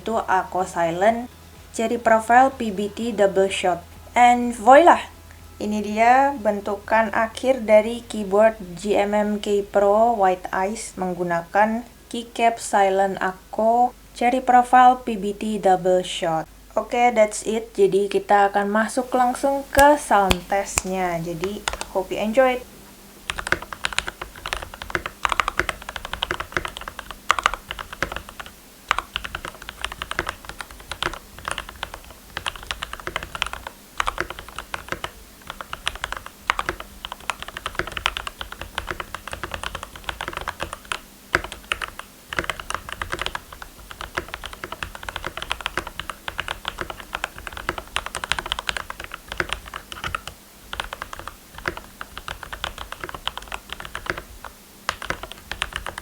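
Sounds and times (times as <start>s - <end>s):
fast mechanical keyboard typing: 19.8s - 22.0s, 23.3s - 56.0s.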